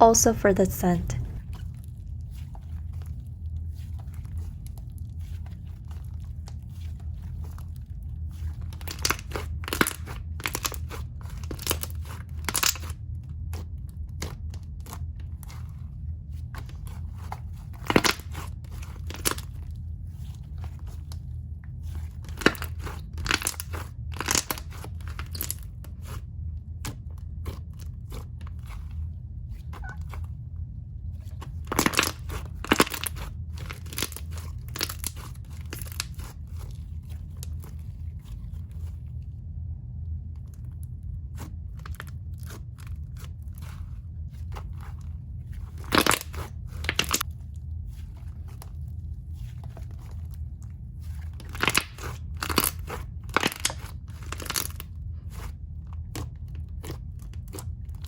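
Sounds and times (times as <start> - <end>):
steady low hum: 0.0 - 8.8, 18.5 - 51.5
slime squished by hand: 51.0 - 55.5.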